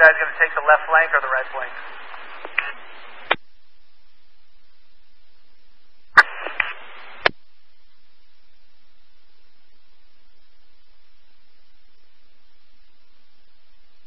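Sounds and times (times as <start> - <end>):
radio static burst: 0.0 - 3.5, 6.0 - 7.4
steady low hiss: 0.0 - 14.0
radio squelch click: 1.8 - 3.4, 6.2 - 7.4.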